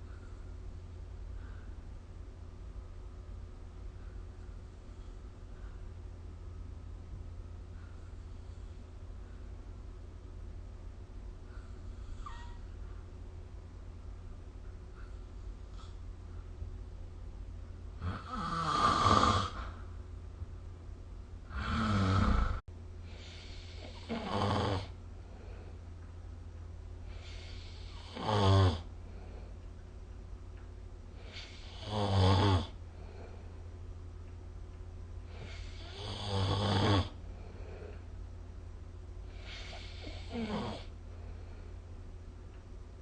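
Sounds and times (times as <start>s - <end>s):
steady low hum: 0.0s - 43.0s
person snoring: 18.0s - 19.7s, 21.5s - 22.6s, 23.3s - 24.9s, 27.3s - 28.9s, 31.3s - 32.8s, 35.4s - 37.2s, 39.4s - 40.9s.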